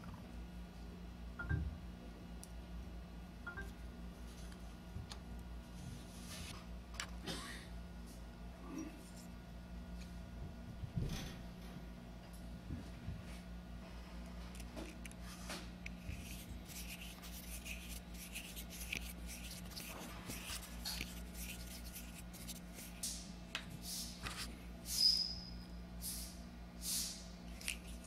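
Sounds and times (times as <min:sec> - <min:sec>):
brief high squeak: 0:24.9 - 0:25.6.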